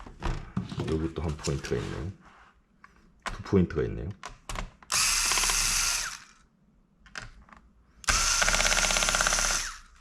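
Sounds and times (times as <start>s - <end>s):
electric screwdriver whirring: 4.9s - 6.4s, 8.0s - 9.9s.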